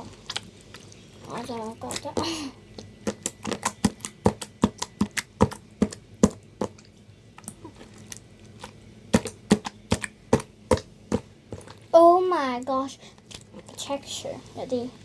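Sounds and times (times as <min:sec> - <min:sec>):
slime squeezed clicking and popping: 0:02.9 - 0:11.2.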